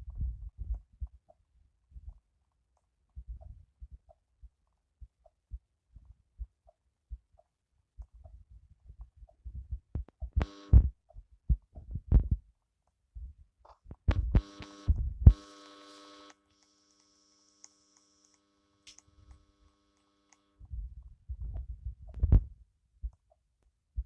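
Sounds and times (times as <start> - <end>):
dull low thumps: 9.4 - 12.5, 14.0 - 15.4
buzzing hum: 10.4 - 11.0, 14.1 - 20.8.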